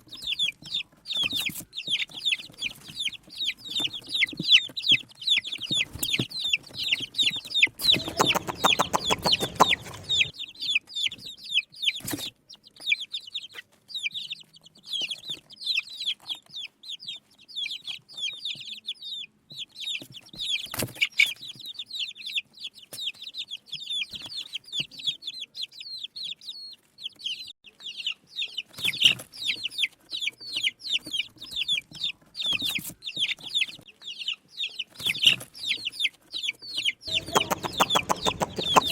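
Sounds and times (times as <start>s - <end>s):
baby chicks peeping: 0.0s - 38.9s
rapid rattling noise: 37.1s - 38.9s.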